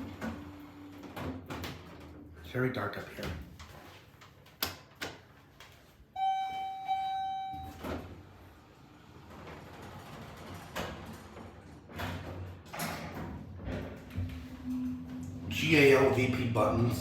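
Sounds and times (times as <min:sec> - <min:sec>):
elevator electronic tone: 0:06.2 - 0:08.2
elevator doors sliding: 0:06.2 - 0:17.0.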